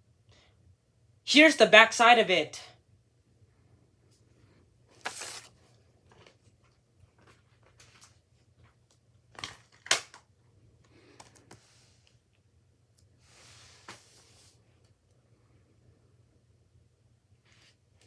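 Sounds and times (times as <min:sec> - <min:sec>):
paper rustles: 0:04.9 - 0:08.8.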